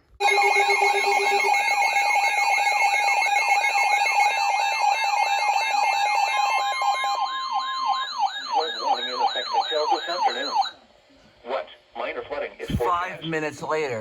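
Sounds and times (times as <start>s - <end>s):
steady alarm tone: 0.0s - 10.8s
steady beeping tones: 0.2s - 10.8s
warbling siren-like alarm tone: 0.2s - 10.8s.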